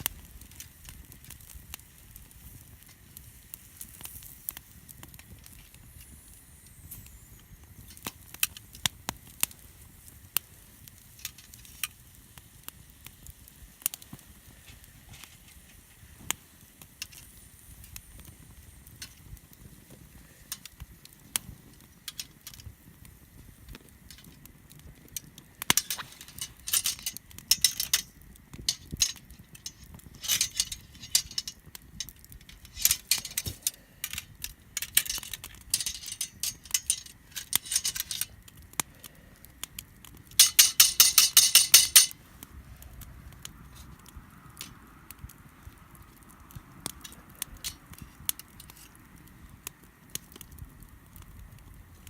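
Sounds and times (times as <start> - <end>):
campfire crackling: 0.0 - 52.0
camp cookware clinking and rattling: 25.6 - 38.4, 40.4 - 42.2.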